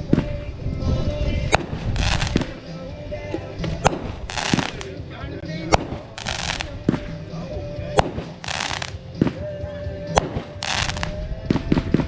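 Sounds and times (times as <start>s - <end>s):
fireworks bangs: 1.5s - 2.6s, 3.8s - 4.9s, 5.7s - 7.0s, 8.0s - 9.0s, 10.2s - 11.2s
fireworks crackling hiss: 1.6s - 2.7s, 3.9s - 4.9s, 5.8s - 6.8s, 8.1s - 9.0s, 10.2s - 11.2s.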